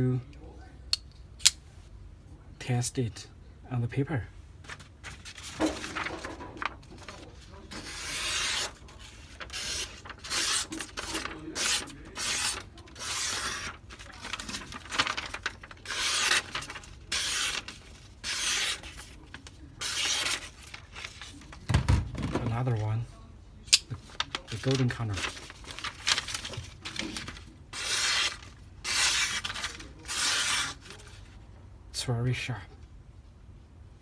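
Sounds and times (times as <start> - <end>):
knife slicing paper: 5.2 - 21.4, 24.0 - 31.2.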